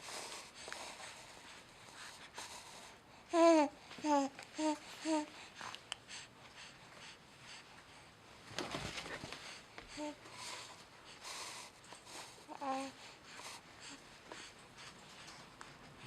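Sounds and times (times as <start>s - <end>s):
breathy rustling noise: 0.0s - 16.0s
baby cooing: 3.4s - 5.3s.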